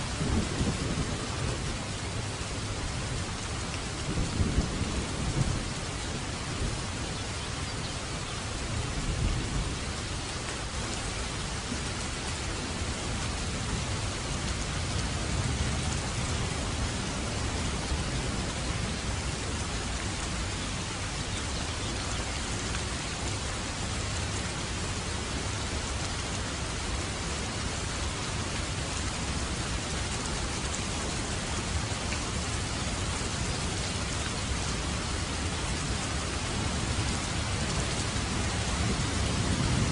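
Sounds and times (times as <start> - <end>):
thunder rumbling: 0.0 - 2.3, 4.0 - 6.9, 36.6 - 39.9
steady rain hissing: 0.0 - 39.9.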